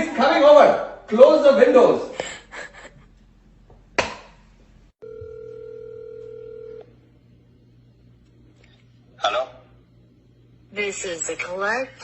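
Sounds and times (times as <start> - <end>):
electronic telephone ring tone: 5.0 - 6.9.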